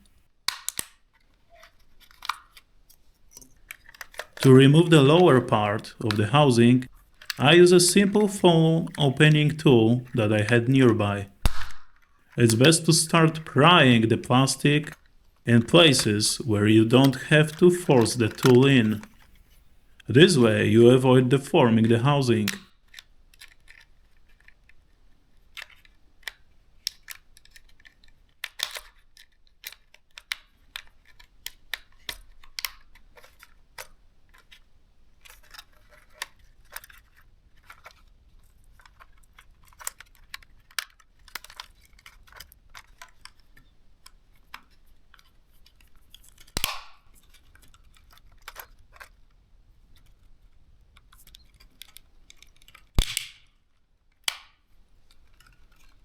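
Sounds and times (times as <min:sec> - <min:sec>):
plastic snap: 0:00.5 - 0:01.1, 0:11.4 - 0:12.1, 0:46.4 - 0:47.4, 0:51.9 - 0:53.6, 0:54.2 - 0:54.6
plastic clips clicking: 0:00.5 - 0:02.7, 0:25.6 - 0:34.6, 0:38.8 - 0:49.2, 0:51.0 - 0:53.6.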